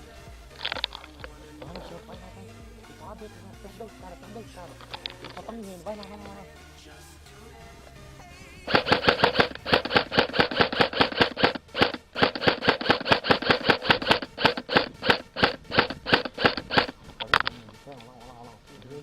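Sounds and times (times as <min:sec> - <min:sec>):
airsoft gun rapid shots: 0:08.7 - 0:17.4.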